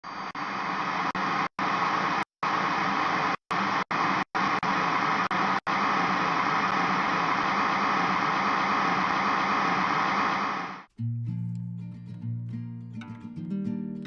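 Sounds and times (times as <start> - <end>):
loud steady rushing noise: 0.3 - 10.9.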